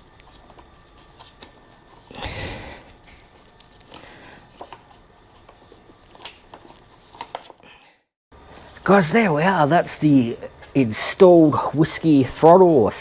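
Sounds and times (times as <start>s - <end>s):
rustling tearing noise: 0.0s - 7.6s.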